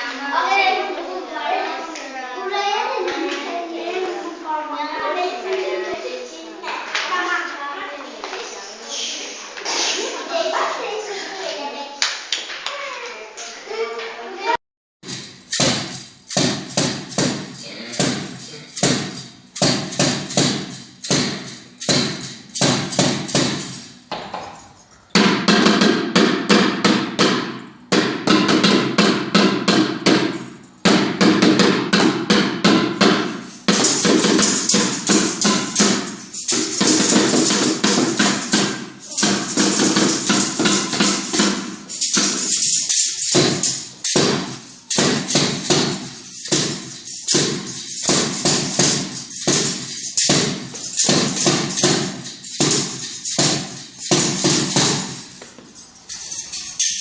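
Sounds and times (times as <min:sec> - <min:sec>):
bright jangling high layer: 0:15.0 - 0:25.1, 0:33.0 - 0:57.0
music with percussive beat: 0:15.0 - 0:55.4.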